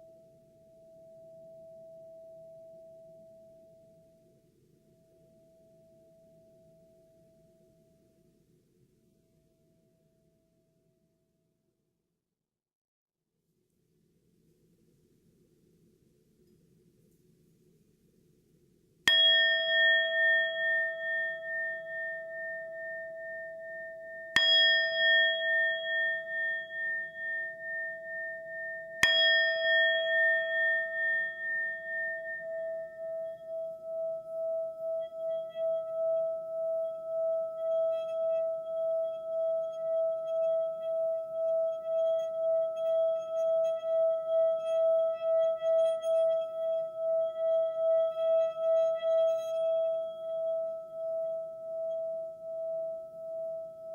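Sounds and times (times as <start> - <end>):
singing bowl steady hum: 0.0 - 10.8, 19.0 - 53.9
singing bowl ringing: 19.1 - 53.9.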